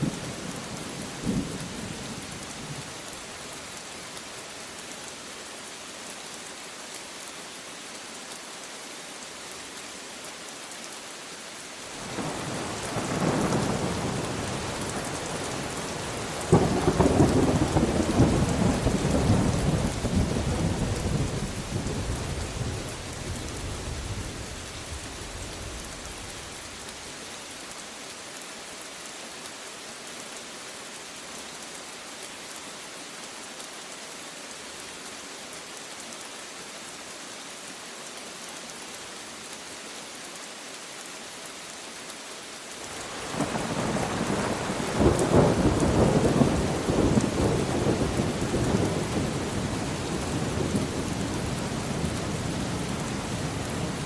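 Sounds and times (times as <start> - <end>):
steady rain: 0.0 - 54.0
thunder rumbling and cracking: 43.3 - 54.0.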